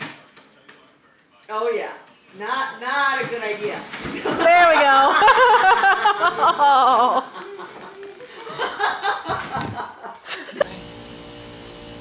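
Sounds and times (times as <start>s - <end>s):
people talking: 0.0s - 9.1s
people laughing: 4.2s - 10.7s.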